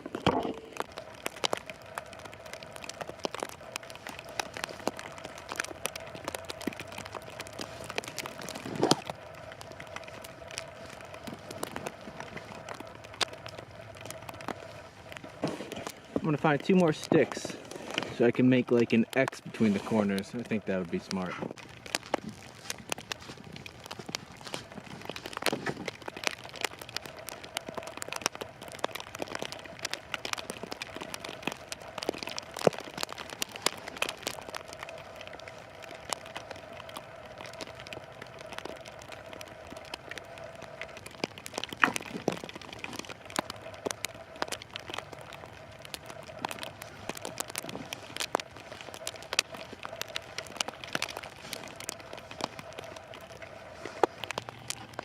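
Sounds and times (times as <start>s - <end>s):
plastic wrap crinkling: 0.0s - 55.0s
sticks cracking: 0.0s - 55.0s.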